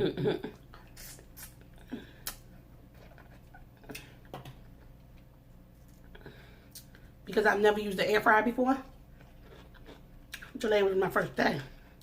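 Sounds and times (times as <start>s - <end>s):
crunching fried food: 9.1s - 10.6s.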